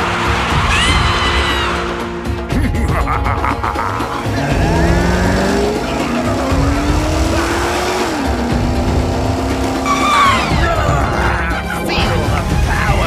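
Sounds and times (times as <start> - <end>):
car engine revving: 3.5 - 11.1.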